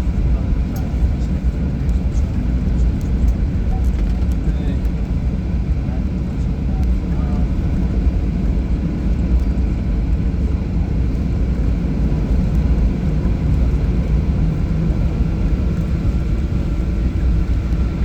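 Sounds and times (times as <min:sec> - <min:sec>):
airplane cabin engine rumble: 0:00.0 - 0:18.0.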